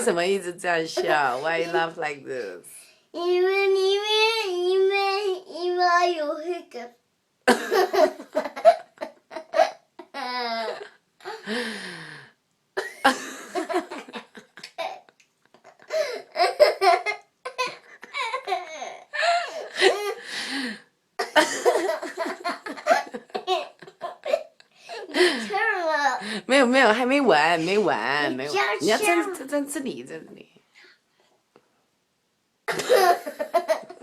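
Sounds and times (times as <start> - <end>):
little girl giggling with hiccups: 32.7 - 33.9.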